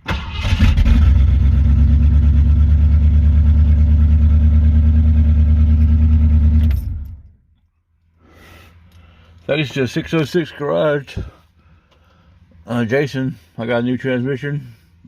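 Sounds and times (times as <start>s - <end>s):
car engine idling: 0.2s - 7.3s.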